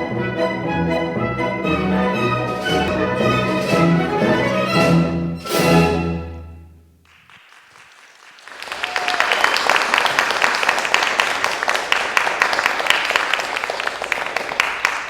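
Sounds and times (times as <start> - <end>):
audience applause: 7.1 - 15.0.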